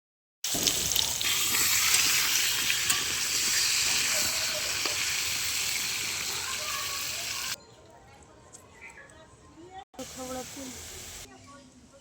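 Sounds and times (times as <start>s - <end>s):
food sizzling in hot oil: 0.4s - 7.6s, 10.0s - 11.3s.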